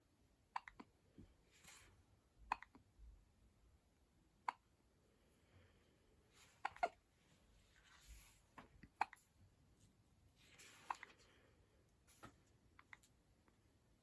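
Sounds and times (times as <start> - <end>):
baby hiccuping: 0.5 - 0.9, 2.5 - 2.8, 6.6 - 7.0, 8.9 - 9.2.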